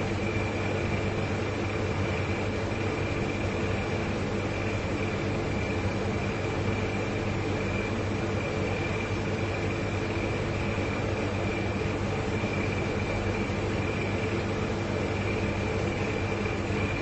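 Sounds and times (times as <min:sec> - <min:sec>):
refrigerators humming: 0:00.0 - 0:17.0.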